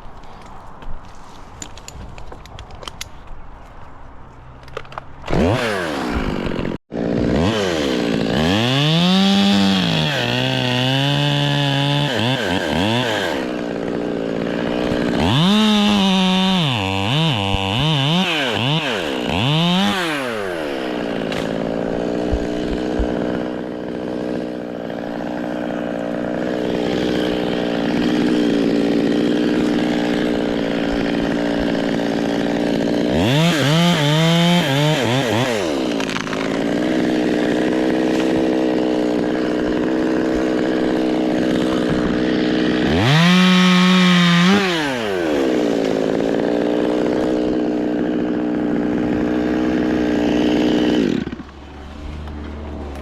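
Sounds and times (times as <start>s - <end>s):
chainsaw idling and revving: 5.2s - 53.0s.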